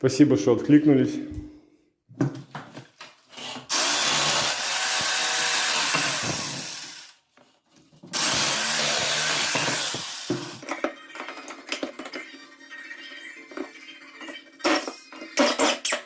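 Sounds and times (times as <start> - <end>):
electric power tool on wood: 3.7 - 7.2, 8.2 - 10.6.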